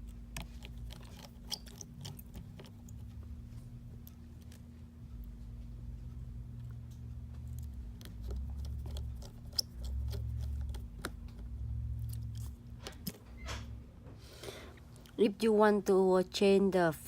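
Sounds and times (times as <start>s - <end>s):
small tools clicking: 7.4s - 11.4s.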